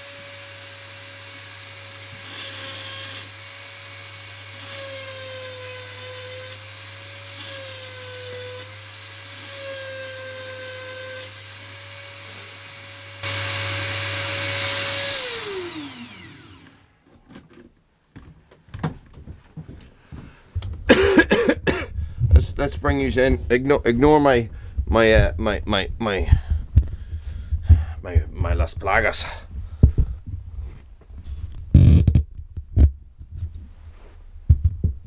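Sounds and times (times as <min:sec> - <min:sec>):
rotary tool grinding: 0:00.0 - 0:16.9.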